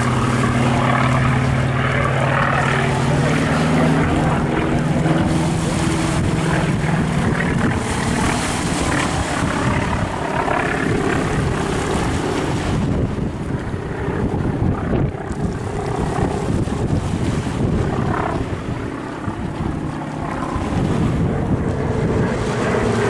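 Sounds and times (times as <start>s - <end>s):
piston aircraft engine droning: 0.0s - 23.0s
wind noise on microphone: 0.0s - 23.0s.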